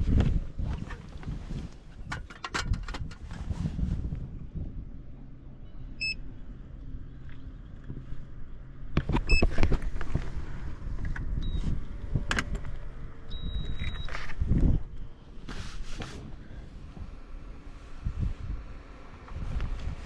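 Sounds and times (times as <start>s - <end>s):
steady low hum: 0.0s - 20.0s
short electronic beeps: 6.0s - 6.2s, 11.4s - 11.7s, 13.3s - 14.2s.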